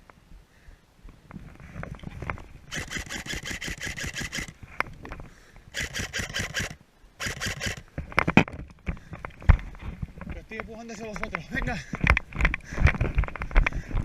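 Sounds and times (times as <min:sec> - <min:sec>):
airsoft rifle full-auto bursts: 0:02.7 - 0:04.5, 0:05.7 - 0:07.8.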